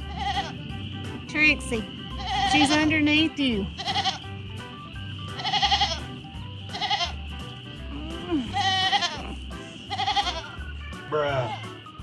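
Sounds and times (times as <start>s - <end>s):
bleat-like animal call: 0.0s - 0.6s, 3.8s - 4.2s, 5.4s - 6.0s, 6.7s - 7.2s, 8.3s - 10.6s, 11.2s - 11.6s
music with bass beat: 0.0s - 12.0s.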